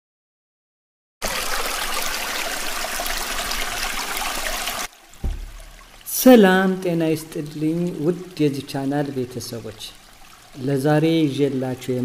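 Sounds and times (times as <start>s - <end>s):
rushing water: 1.2s - 12.0s
short low thump: 5.2s - 5.9s.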